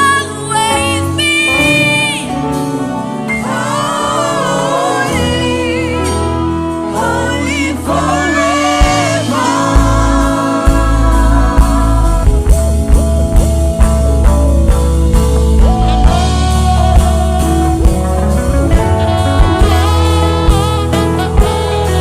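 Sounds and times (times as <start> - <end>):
band playing instrumental: 0.0 - 22.0
lead guitar with sliding notes: 0.0 - 22.0
drum-kit beat: 8.4 - 22.0.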